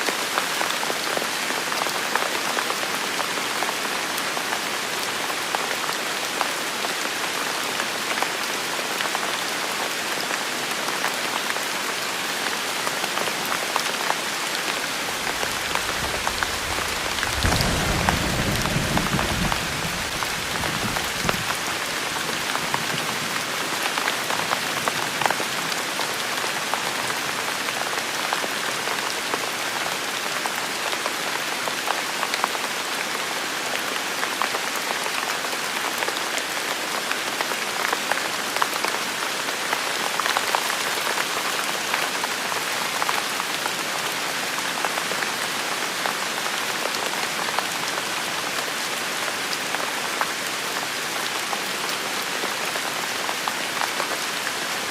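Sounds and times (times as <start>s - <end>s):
rain on hard surfaces: 0.0s - 54.9s
thunder rumble: 15.1s - 21.7s.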